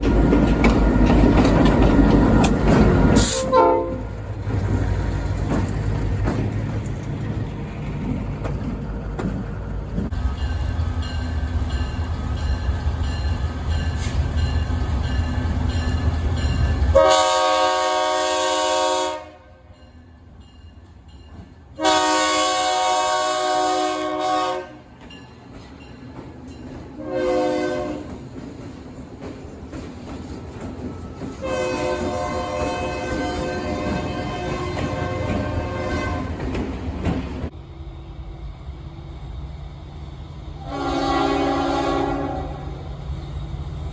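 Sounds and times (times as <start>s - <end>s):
moving train rumble: 0.0s - 43.9s
locomotive air horn: 3.2s - 4.1s, 16.9s - 19.6s, 21.8s - 24.9s, 27.0s - 28.1s, 31.4s - 36.4s, 40.6s - 42.6s.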